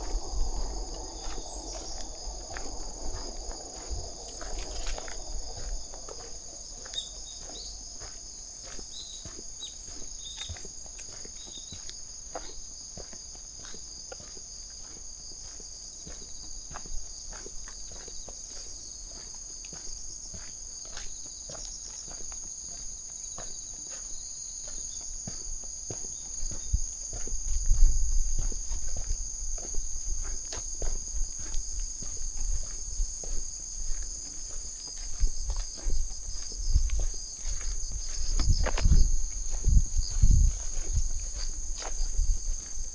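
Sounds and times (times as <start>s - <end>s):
low rumbling thumps: 0.0s - 7.4s, 35.1s - 42.9s
light footsteps: 0.0s - 11.2s, 24.8s - 42.9s
crickets and insects singing: 0.0s - 12.2s, 17.2s - 42.9s.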